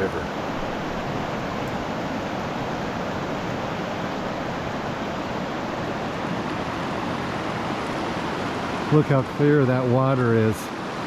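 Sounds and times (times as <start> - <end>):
river rushing: 0.0 - 11.0.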